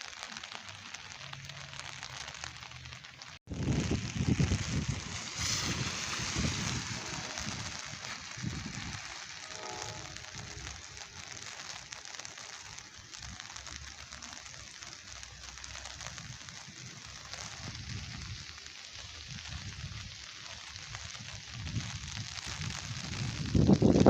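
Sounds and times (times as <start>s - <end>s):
steady rain falling: 0.0s - 24.0s
low rumbling: 3.5s - 11.0s.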